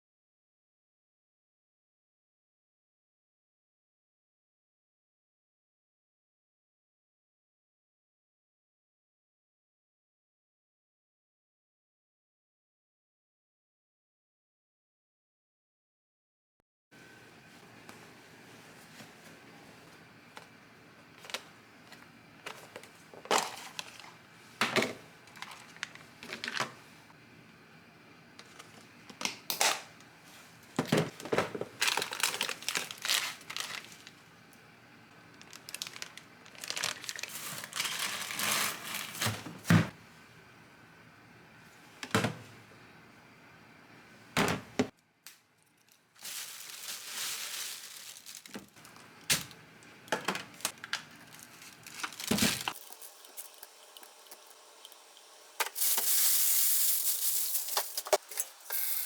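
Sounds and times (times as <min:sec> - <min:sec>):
plastic packaging crinkling and tearing: 0:22.6 - 0:24.2, 0:25.3 - 0:26.8, 0:31.6 - 0:34.3, 0:35.1 - 0:39.6, 0:45.7 - 0:49.6, 0:50.2 - 0:53.1
steady hiss: 0:48.8 - 0:59.0.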